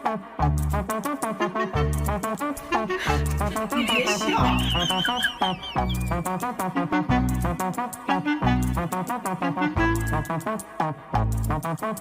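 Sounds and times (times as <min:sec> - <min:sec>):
background music with bass and percussion: 0:00.0 - 0:03.6, 0:04.3 - 0:12.0.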